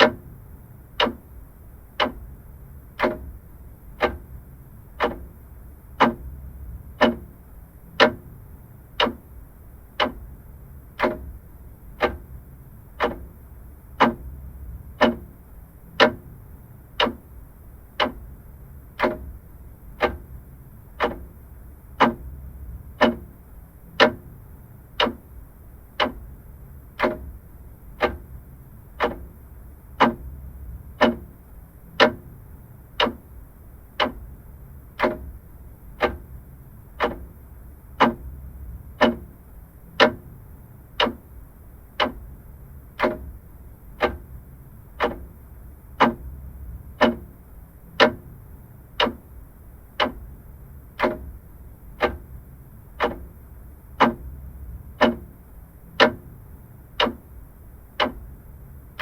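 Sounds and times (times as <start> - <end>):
mechanical clock ticking: 0.0 - 59.0.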